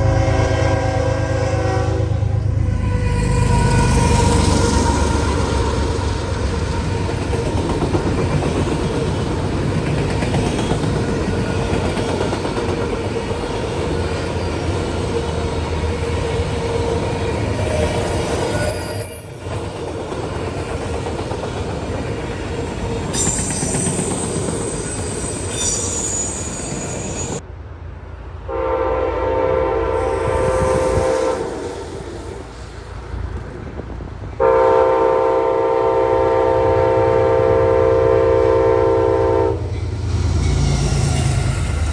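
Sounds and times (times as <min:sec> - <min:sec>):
locomotive horn: 0:00.0 - 0:04.7, 0:28.5 - 0:31.8, 0:34.4 - 0:39.8
train wheels rumbling on rails: 0:00.0 - 0:28.4, 0:29.4 - 0:41.9
high-pitched wheel squeal: 0:16.3 - 0:19.5, 0:23.1 - 0:27.4.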